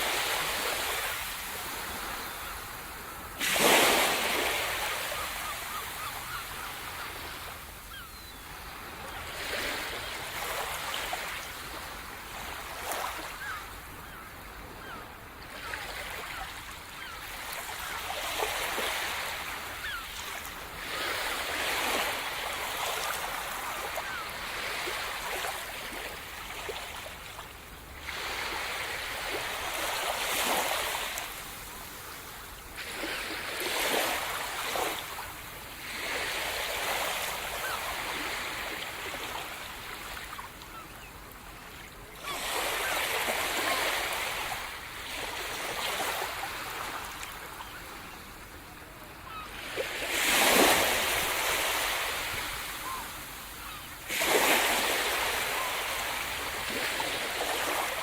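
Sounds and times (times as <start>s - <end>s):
waves breaking: 0.0s - 6.4s, 49.1s - 58.0s.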